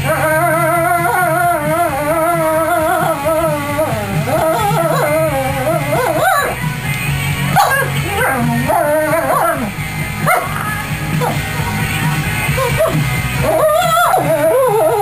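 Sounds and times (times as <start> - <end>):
dog whining and yowling: 0.0 - 6.6, 7.6 - 10.6, 12.6 - 15.0
rock song: 0.0 - 15.0
dog yipping: 4.4 - 6.6, 7.6 - 11.4.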